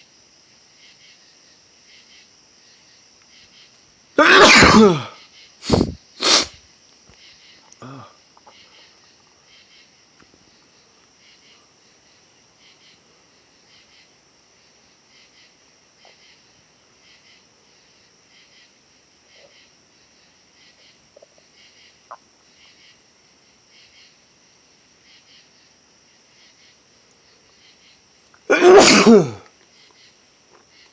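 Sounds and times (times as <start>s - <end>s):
person sneezing: 4.2s - 6.6s, 7.8s - 8.1s, 28.5s - 29.4s.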